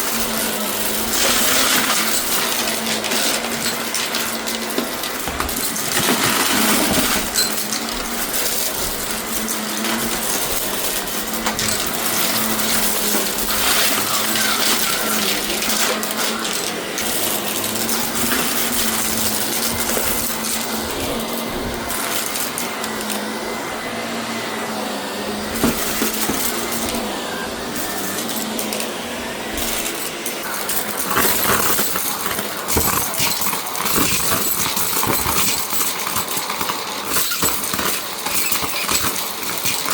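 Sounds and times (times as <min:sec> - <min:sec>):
debris rattling: 0:00.0 - 0:23.0
vacuum cleaner running: 0:00.0 - 0:39.9.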